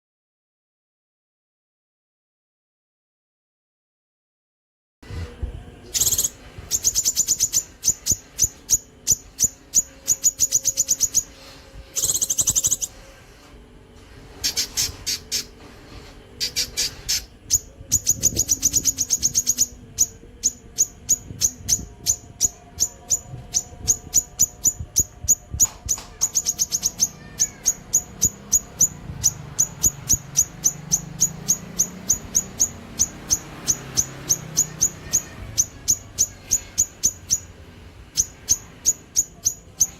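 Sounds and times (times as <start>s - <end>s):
songbird singing sharp high notes: 5.9s - 13.0s, 16.4s - 39.9s.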